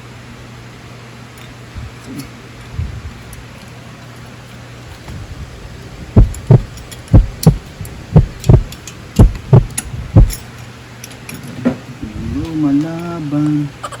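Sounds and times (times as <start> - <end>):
heartbeat: 6.2 - 10.4.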